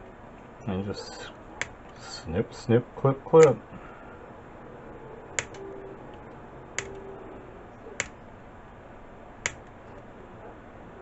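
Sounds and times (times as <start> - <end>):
wire cutters snipping: 3.4 - 3.6, 5.4 - 5.6.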